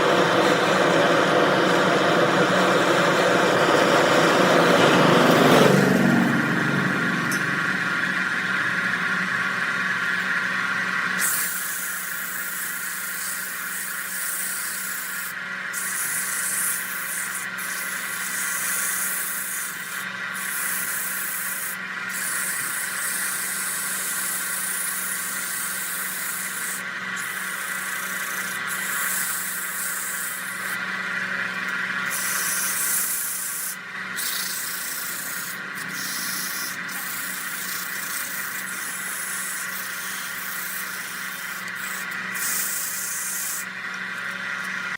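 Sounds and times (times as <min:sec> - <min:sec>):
lathe motor hum: 0:00.0 - 0:44.9
hissing sanding scrape: 0:32.1 - 0:43.7.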